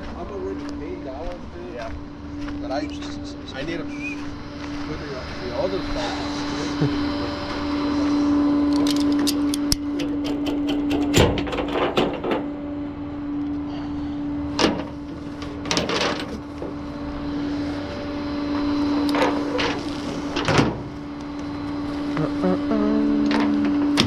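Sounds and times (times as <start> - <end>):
tow truck engine humming: 3.2 - 24.0
metal clanks and rattles: 8.7 - 12.6, 14.6 - 16.8, 19.0 - 20.9.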